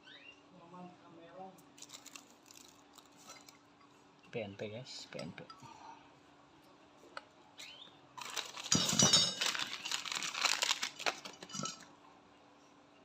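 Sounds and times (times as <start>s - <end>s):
small metal parts clattering: 1.8s - 3.5s, 8.2s - 11.8s.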